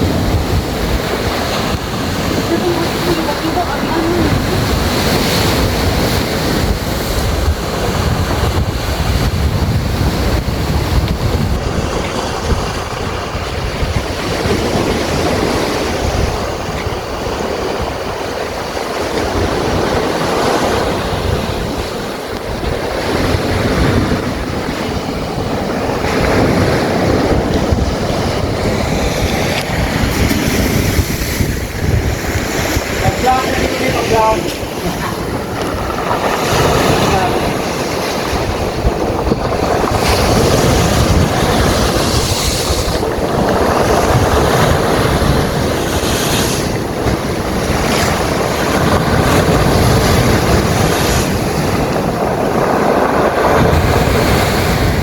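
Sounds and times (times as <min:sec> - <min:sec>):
waves on a stony beach: 0:00.0 - 0:55.0
wind buffeting microphone: 0:00.0 - 0:55.0
stones rolling in surf: 0:25.7 - 0:55.0.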